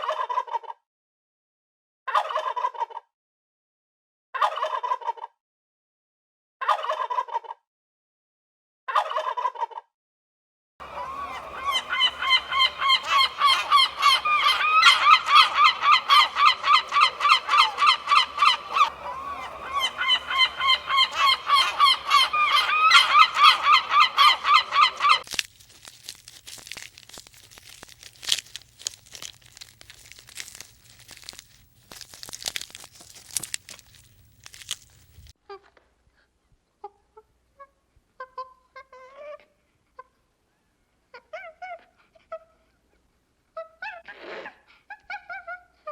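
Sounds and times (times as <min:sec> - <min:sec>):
flock of fowl calling: 0:10.8 - 0:25.3
faint clicks and rustles: 0:25.2 - 0:35.8.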